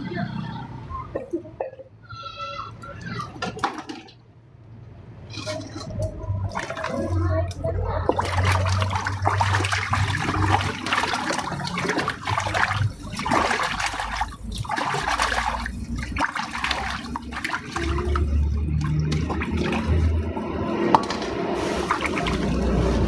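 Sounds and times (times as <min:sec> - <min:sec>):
water pouring and splashing: 0:05.3 - 0:23.0.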